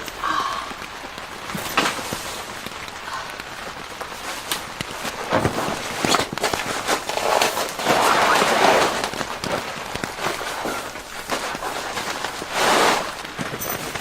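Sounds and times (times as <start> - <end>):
rustling: 0.0 - 14.0.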